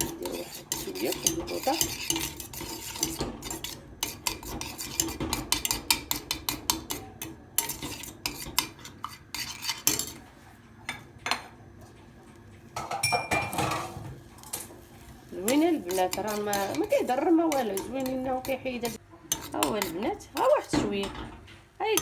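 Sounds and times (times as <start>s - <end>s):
spoon clinking against pan: 12.8s - 13.6s.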